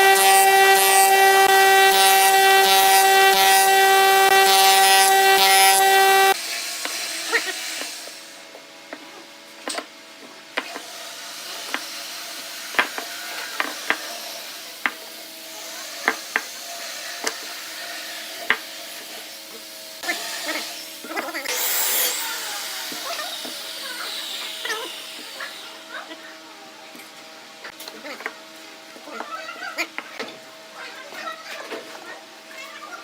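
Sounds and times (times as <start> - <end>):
tool scraping wood: 0.0 - 6.4
wood lathe motor hum: 0.0 - 8.0, 10.8 - 26.6.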